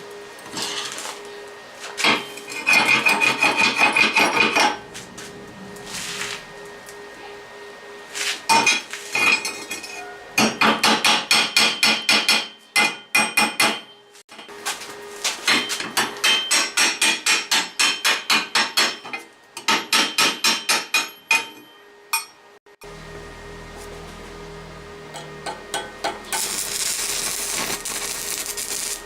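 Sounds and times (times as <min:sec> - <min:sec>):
small hammer striking steel: 0:10.4 - 0:14.0, 0:15.5 - 0:22.4.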